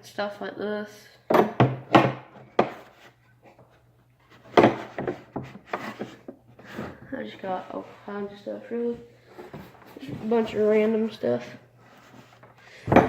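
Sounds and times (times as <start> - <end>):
tools knocking and scraping on workbench: 1.3 - 3.1, 4.3 - 6.9.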